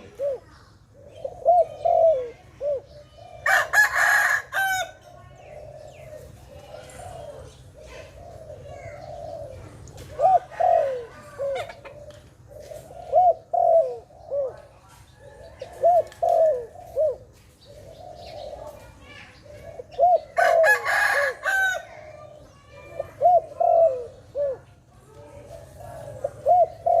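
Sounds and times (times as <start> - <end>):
dove cooing: 0.0 - 27.0.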